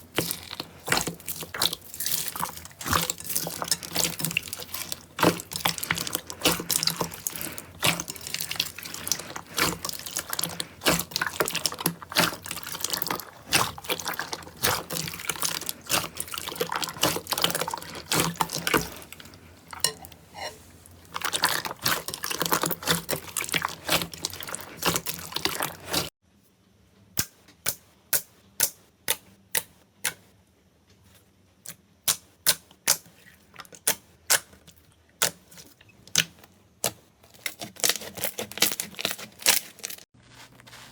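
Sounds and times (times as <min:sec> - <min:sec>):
slime crackling and popping: 0:00.0 - 0:19.1.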